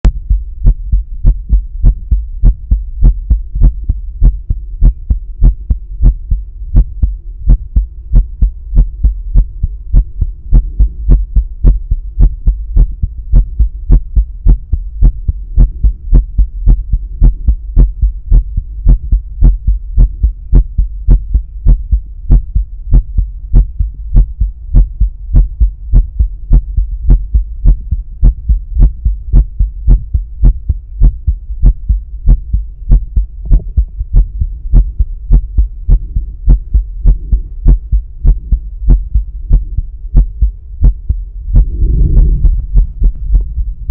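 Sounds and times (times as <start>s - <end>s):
faint steady hum: 0.0s - 43.9s
heartbeat thumping: 0.0s - 43.9s.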